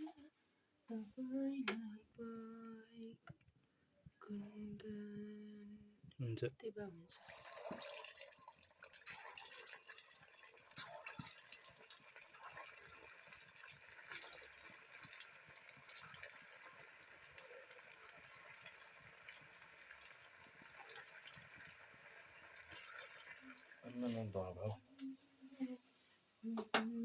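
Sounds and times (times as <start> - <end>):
wood fire crackling: 7.2 - 24.1.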